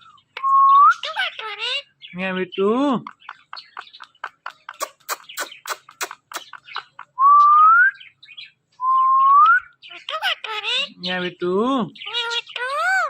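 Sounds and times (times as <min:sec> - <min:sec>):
parrot clicking: 0:03.0 - 0:06.9.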